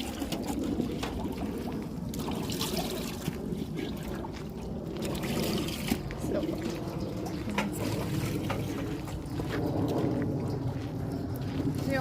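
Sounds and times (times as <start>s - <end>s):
water trickling into a tub: 0.0s - 9.5s.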